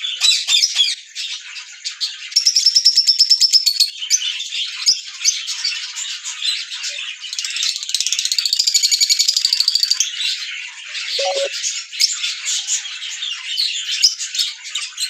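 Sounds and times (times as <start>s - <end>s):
parrots chirping and chattering: 11.2s - 11.5s.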